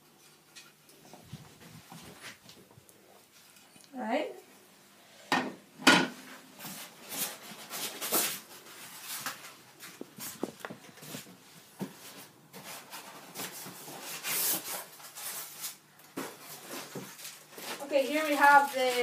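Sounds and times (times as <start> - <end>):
packaging rustling and scraping: 6.2 - 19.0.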